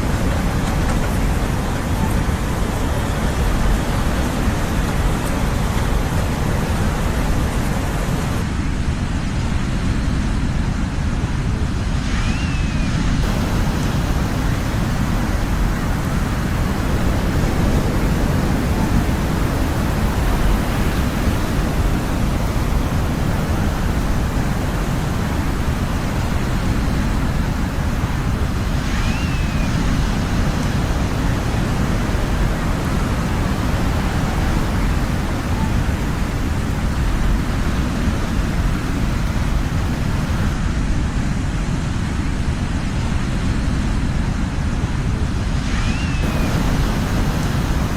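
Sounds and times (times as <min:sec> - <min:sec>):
ocean surf rushing: 0:00.0 - 0:47.9.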